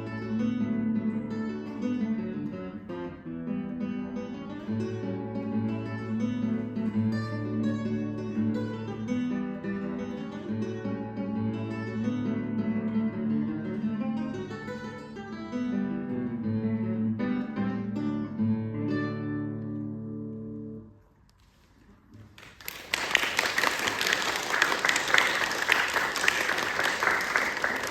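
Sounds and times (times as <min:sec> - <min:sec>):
acoustic guitar playing: 0:00.0 - 0:21.7
audience applause: 0:22.3 - 0:27.9.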